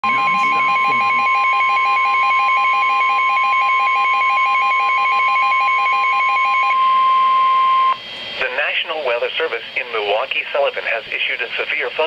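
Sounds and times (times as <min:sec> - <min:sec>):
weather radio alarm tone: 0:00.0 - 0:08.6.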